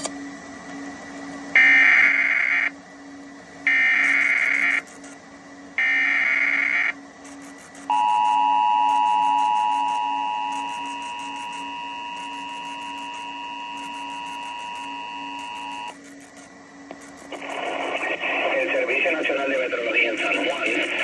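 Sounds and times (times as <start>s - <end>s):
warbling digital data bursts: 1.6s - 2.7s, 3.7s - 5.2s, 5.8s - 21.0s
two-tone attention signal: 7.9s - 15.9s.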